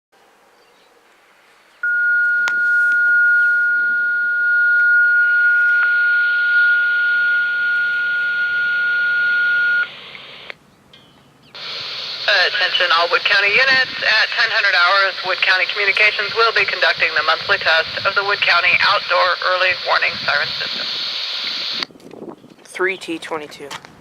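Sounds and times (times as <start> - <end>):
radio channel hiss: 7.8 - 10.6, 11.6 - 21.9.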